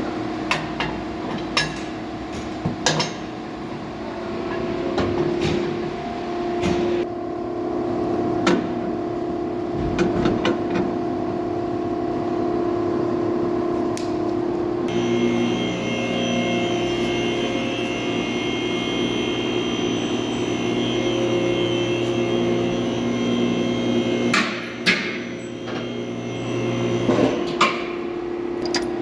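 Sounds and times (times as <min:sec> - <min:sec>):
machine hum: 0:14.4 - 0:29.0
metallic clinks and knocks: 0:28.6 - 0:29.0.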